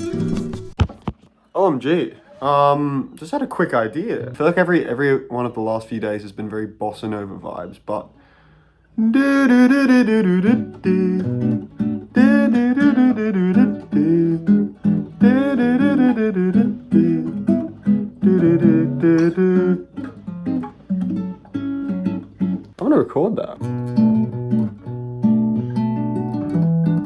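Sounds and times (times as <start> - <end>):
acoustic guitar: 0.0 - 5.9, 6.9 - 27.0
man singing wordless melody: 9.0 - 11.5, 12.1 - 14.5, 15.2 - 20.0.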